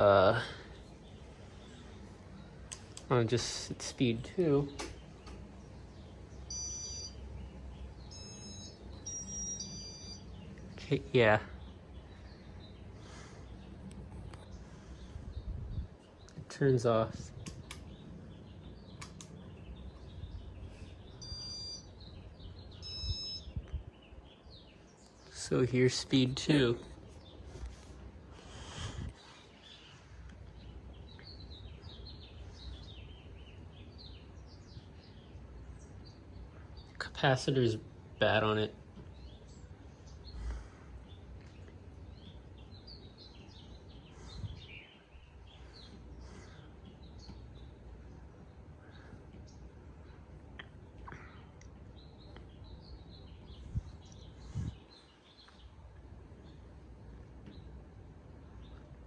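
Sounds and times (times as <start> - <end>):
small birds chirping: 0.0 - 59.0
steady low hum: 0.0 - 59.0
faint clicks: 2.7 - 3.1, 19.0 - 19.4
short electronic beeps: 6.5 - 7.2, 8.1 - 10.4, 21.2 - 21.9, 22.8 - 23.6.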